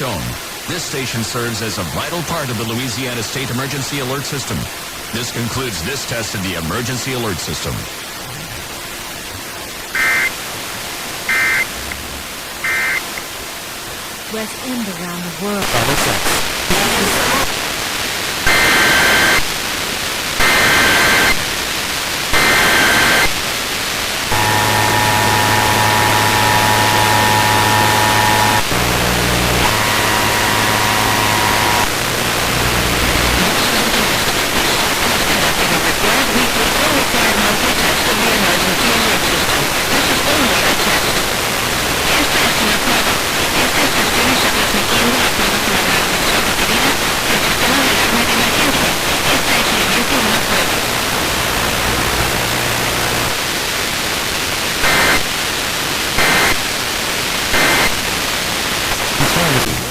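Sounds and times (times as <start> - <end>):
radio static hiss: 0.0 - 59.9
data burst tones: 9.9 - 10.4, 11.3 - 13.2, 24.3 - 35.0
two-tone attention signal: 11.3 - 12.0, 12.6 - 13.1.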